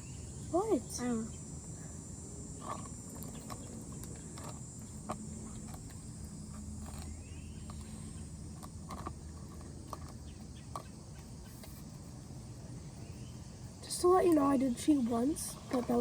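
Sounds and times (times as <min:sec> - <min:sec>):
high insect-like buzz: 0:00.0 - 0:16.0.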